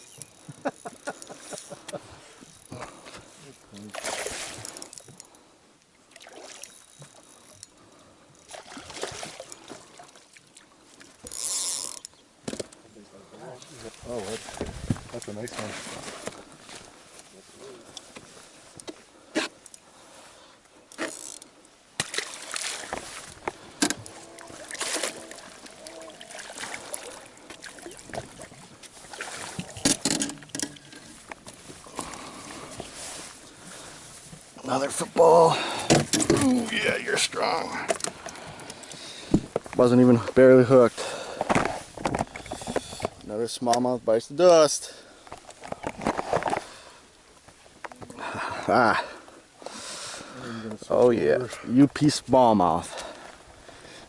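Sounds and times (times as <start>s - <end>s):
water splashing against boat: 2.2s - 5.1s, 8.4s - 11.3s, 13.6s - 16.6s, 22.0s - 40.4s.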